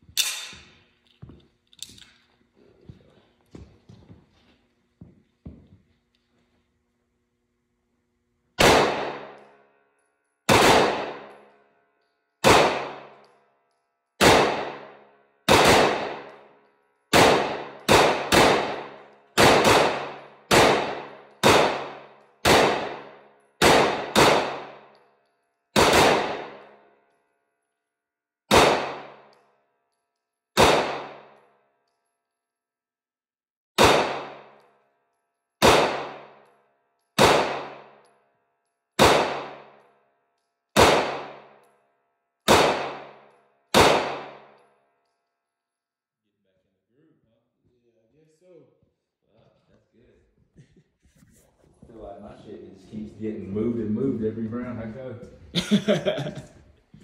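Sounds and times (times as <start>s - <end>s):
pistol shots: 8.6s - 9.6s, 10.5s - 11.5s, 12.4s - 13.3s, 14.2s - 24.9s, 25.7s - 26.9s, 28.5s - 29.4s, 30.6s - 31.4s, 33.8s - 34.6s, 35.6s - 36.5s, 37.2s - 38.0s, 39.0s - 39.8s, 40.8s - 41.7s, 42.5s - 44.6s.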